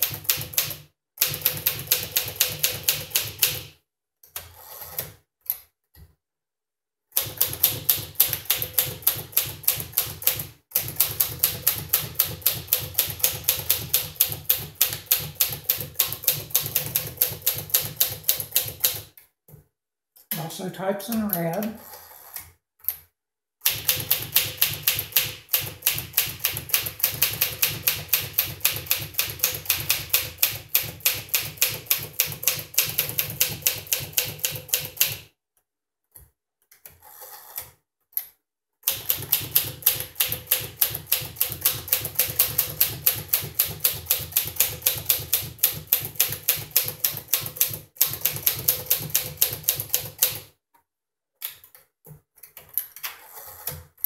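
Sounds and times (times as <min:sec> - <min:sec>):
manual typewriter typing: 0:00.0 - 0:03.7, 0:07.2 - 0:19.1, 0:23.6 - 0:35.2, 0:38.8 - 0:50.5.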